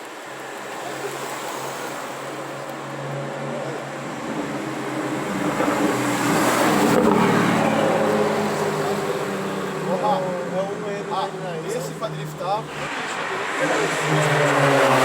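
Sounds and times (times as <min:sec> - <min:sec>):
car engine and exhaust approaching: 0:00.1 - 0:15.0.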